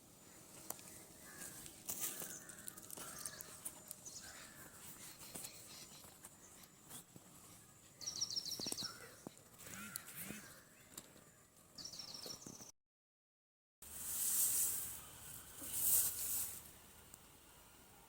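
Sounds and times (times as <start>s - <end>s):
birds calling: 0.2s - 12.7s.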